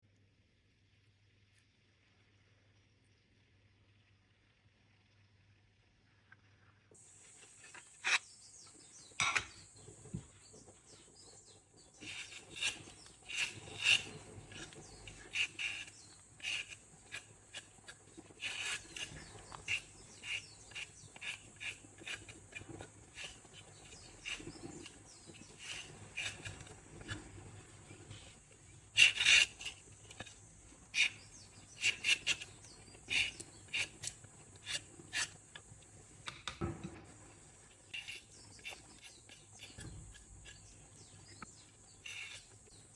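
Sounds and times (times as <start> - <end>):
faint steady hiss: 0.1 - 42.9
utensils tapping and scraping: 9.2 - 10.3, 12.0 - 37.1, 37.7 - 42.9.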